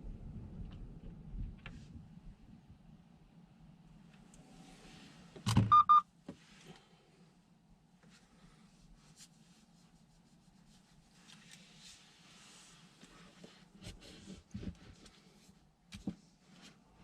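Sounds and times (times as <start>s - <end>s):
faint low hum: 0.0s - 17.0s
high electronic beeps: 5.7s - 6.0s.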